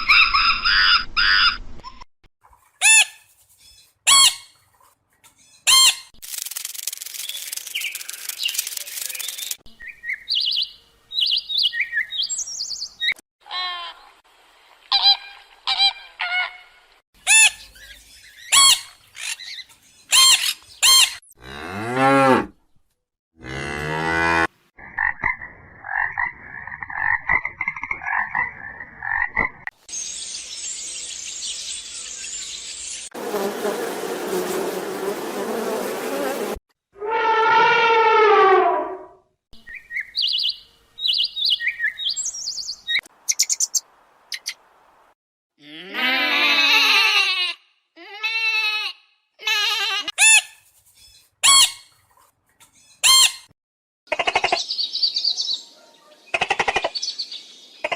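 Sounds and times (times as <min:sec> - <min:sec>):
cow mooing: 0:21.4 - 0:22.5, 0:23.4 - 0:24.5.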